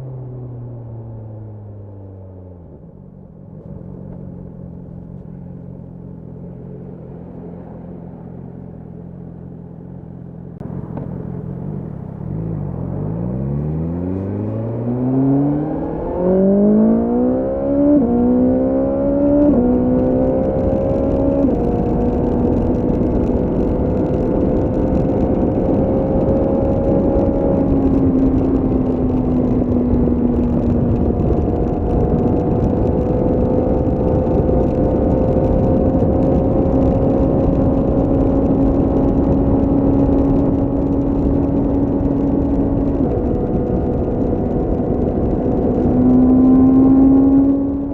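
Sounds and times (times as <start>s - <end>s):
motorcycle engine accelerating: 0.0s - 47.9s.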